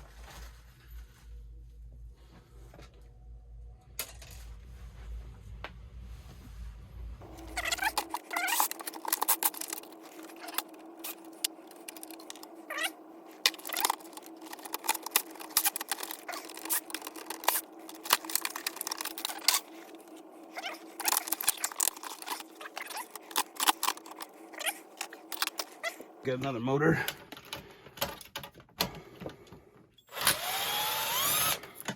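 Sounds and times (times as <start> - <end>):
faint steady hum: 0.0 - 31.9
plastic and metal parts clattering: 7.2 - 29.9, 31.6 - 31.9.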